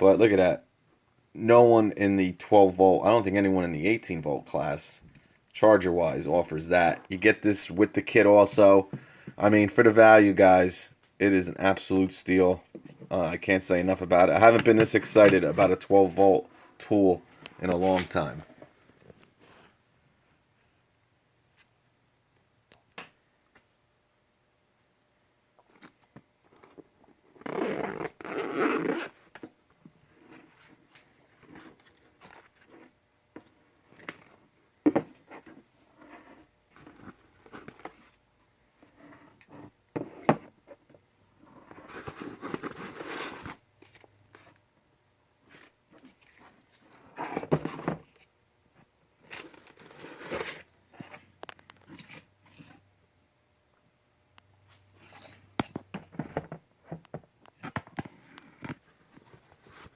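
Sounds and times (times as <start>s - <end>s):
zipper-like scraping bursts: 27.3s - 29.3s, 49.7s - 50.7s.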